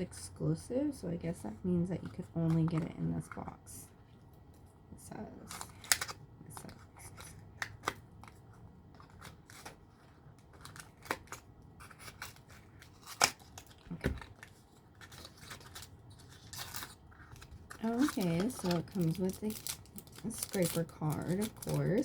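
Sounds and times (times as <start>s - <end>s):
plastic packaging crinkling: 5.4s - 22.0s.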